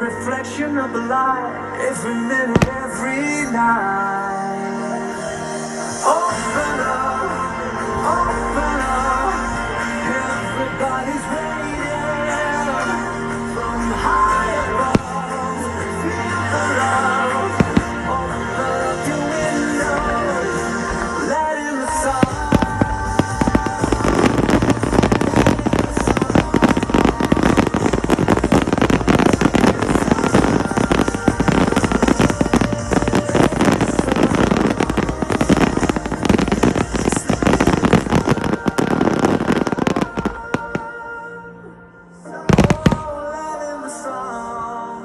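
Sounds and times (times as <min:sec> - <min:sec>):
music: 0:00.0 - 0:45.0
fireworks bangs and crackles: 0:02.4 - 0:03.6, 0:14.0 - 0:15.4, 0:16.6 - 0:40.9, 0:42.5 - 0:43.6.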